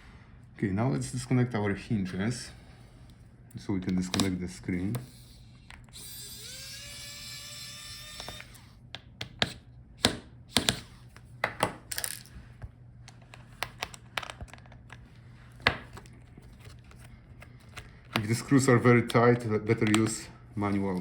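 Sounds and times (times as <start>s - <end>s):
electric screwdriver whirring: 4.1s - 11.2s.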